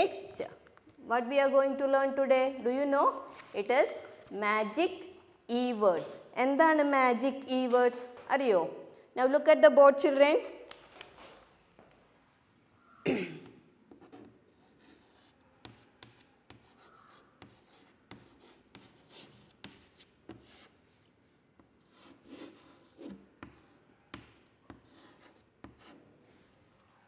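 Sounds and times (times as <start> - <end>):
scratchy writing strokes on board: 13.9 - 20.8, 21.6 - 26.1.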